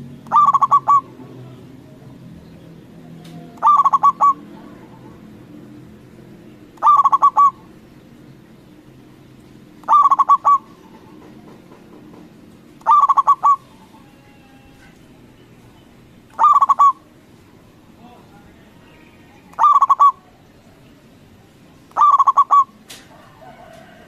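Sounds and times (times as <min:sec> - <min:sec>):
dove cooing: 0:00.2 - 0:01.6, 0:03.4 - 0:05.3, 0:06.8 - 0:07.7, 0:09.8 - 0:11.3, 0:12.8 - 0:14.8, 0:16.3 - 0:17.1, 0:19.6 - 0:20.2, 0:21.9 - 0:24.0.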